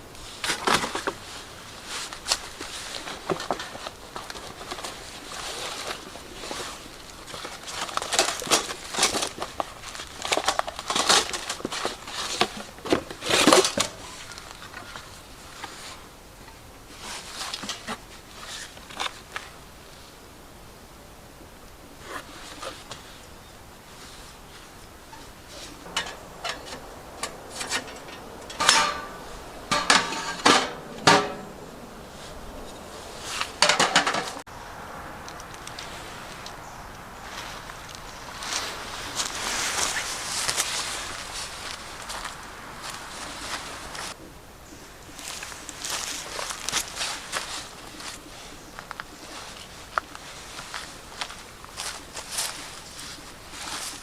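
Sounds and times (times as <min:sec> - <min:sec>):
metal camping gear clanking: 0:00.0 - 0:19.5, 0:24.0 - 0:34.4
crinkling and rustling handling: 0:00.0 - 0:20.3, 0:21.7 - 0:34.5, 0:35.2 - 0:44.2, 0:45.0 - 0:54.0.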